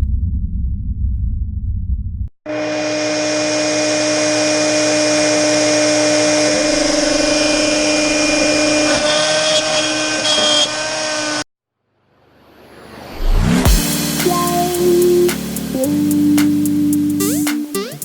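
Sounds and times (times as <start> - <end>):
router spindle whining: 2.5 - 11.5.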